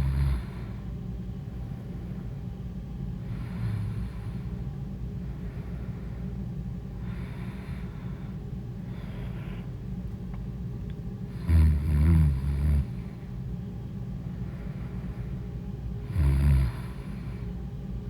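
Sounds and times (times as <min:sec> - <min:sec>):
woman snoring: 0:00.0 - 0:00.6, 0:11.4 - 0:13.0, 0:16.1 - 0:17.3
soft breaths: 0:03.2 - 0:10.0, 0:14.2 - 0:17.6.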